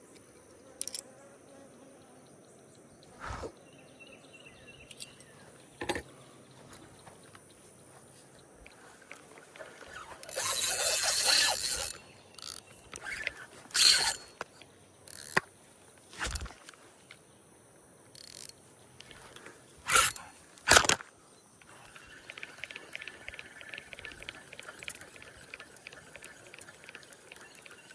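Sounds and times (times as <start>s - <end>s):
mechanical scraping and clicking: 0.8s - 1.0s, 9.1s - 15.4s, 18.2s - 19.2s, 19.8s - 21.0s, 21.6s - 27.9s.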